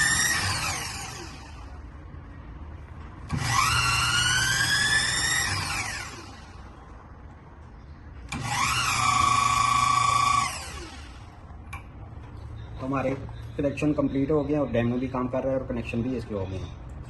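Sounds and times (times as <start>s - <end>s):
electric drill whining: 0.0s - 1.7s, 3.3s - 6.7s, 8.3s - 11.4s.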